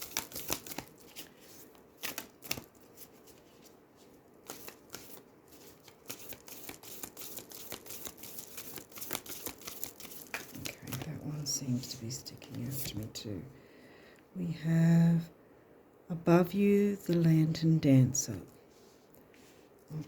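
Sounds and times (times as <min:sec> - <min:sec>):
cards being shuffled: 0:00.0 - 0:13.1.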